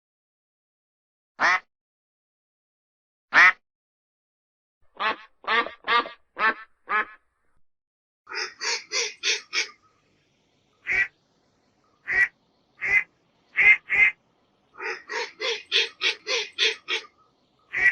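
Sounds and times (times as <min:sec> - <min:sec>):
duck quacking: 0:01.4 - 0:01.7, 0:03.3 - 0:03.6, 0:05.0 - 0:07.2, 0:08.3 - 0:09.8, 0:10.8 - 0:11.1, 0:12.0 - 0:14.2, 0:14.8 - 0:17.9.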